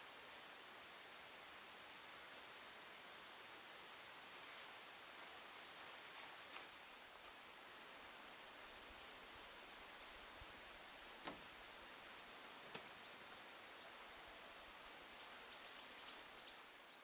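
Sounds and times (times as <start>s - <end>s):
faint hiss: 0.0s - 17.0s
bird chirping: 9.9s - 11.7s, 12.3s - 17.0s
faint clicks: 12.6s - 13.0s.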